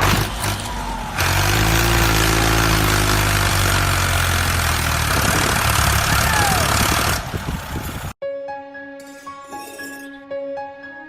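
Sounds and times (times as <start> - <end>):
engine running steadily: 0.0 - 8.2.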